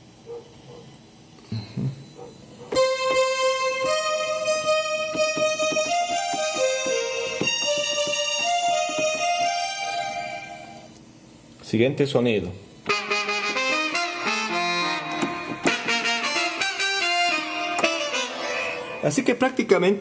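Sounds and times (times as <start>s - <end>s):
synthesizer melody of bright notes: 2.7s - 10.9s, 12.8s - 19.4s.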